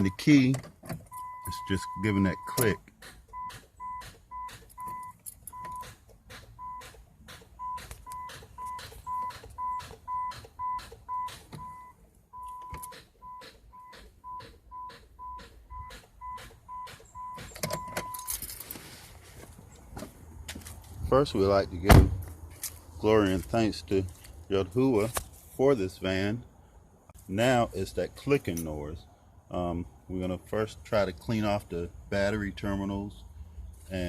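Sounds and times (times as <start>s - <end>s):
car dash chime beeping: 0.0s - 0.5s, 1.1s - 5.9s, 6.6s - 7.0s, 7.6s - 18.4s.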